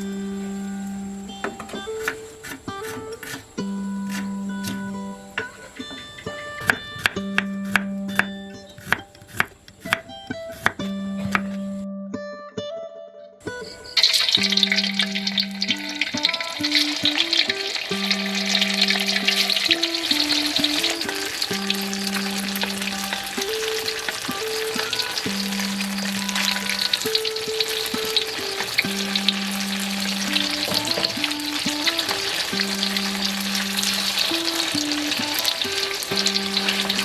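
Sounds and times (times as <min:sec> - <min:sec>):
slow background music: 0:00.0 - 0:37.0
spatula scraping in pan: 0:01.9 - 0:04.8, 0:14.0 - 0:37.0
food sizzling in hot oil: 0:14.0 - 0:37.0.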